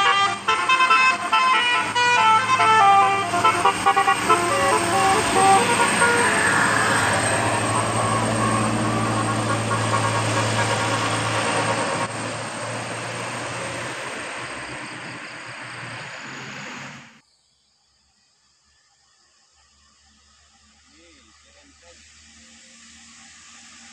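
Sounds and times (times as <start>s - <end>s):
broad rushing noise: 0.0s - 17.2s
bus engine hum: 0.0s - 17.2s.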